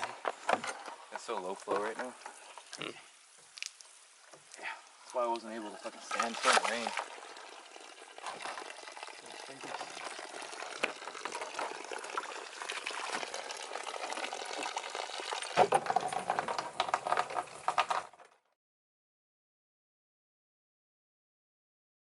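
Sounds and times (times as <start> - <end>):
spring water splashing: 3.5 - 16.2.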